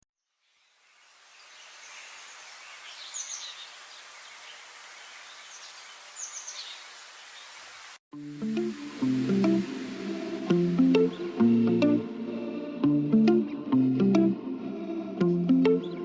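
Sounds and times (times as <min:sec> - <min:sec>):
steady outdoor hiss: 0:00.3 - 0:13.2
small bird chirping: 0:00.4 - 0:07.8
plucked guitar music: 0:08.1 - 0:16.0.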